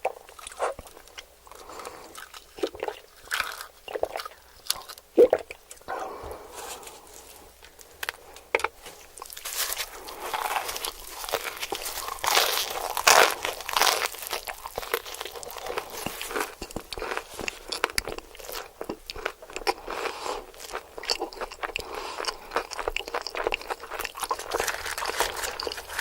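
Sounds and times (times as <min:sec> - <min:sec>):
chewing crunchy fried chicken: 0:00.0 - 0:26.0.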